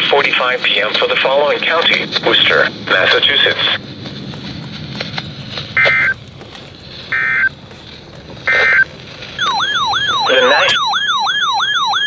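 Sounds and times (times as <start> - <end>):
electronic siren tone sweeping: 5.8 - 6.2, 7.1 - 7.5, 8.5 - 12.0
screechy two-tone data bursts: 5.8 - 6.2, 7.1 - 7.5, 8.5 - 8.8, 9.4 - 11.6.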